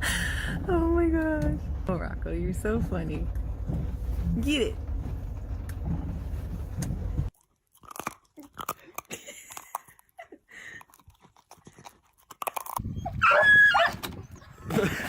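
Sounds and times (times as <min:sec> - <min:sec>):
steady low rumble: 0:00.0 - 0:07.3
dog chewing and crunching: 0:03.4 - 0:13.2.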